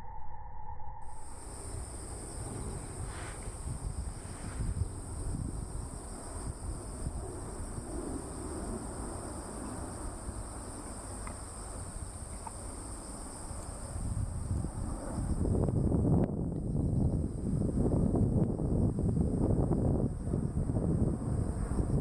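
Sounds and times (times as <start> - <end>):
high-pitched insect trilling: 1.1 - 15.6.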